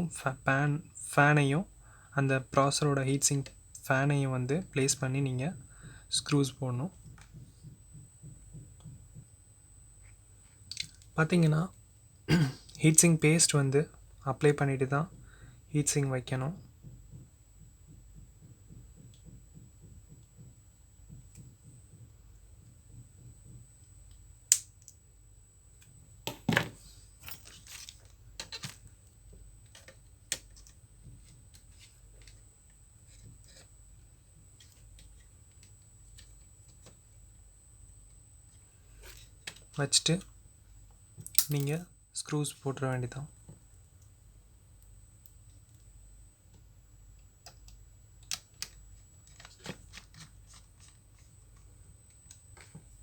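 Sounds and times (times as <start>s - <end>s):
faint high whine: 0.0s - 53.0s
laptop parts clicking and tapping: 29.6s - 32.4s, 41.2s - 41.8s, 47.4s - 52.8s.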